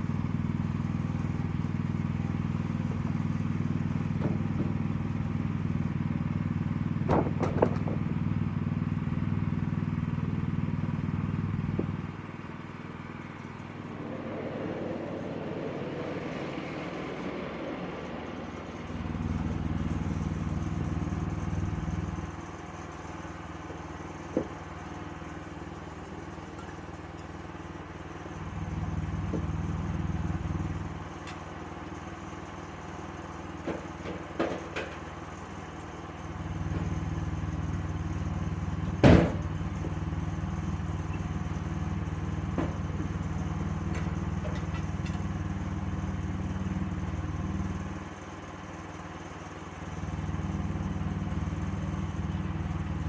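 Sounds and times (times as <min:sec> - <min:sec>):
sawmill engine running: 0:00.0 - 0:53.0.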